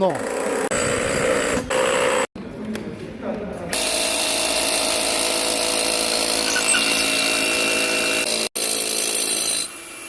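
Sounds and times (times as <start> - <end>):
power tool motor running: 3.8 - 10.0.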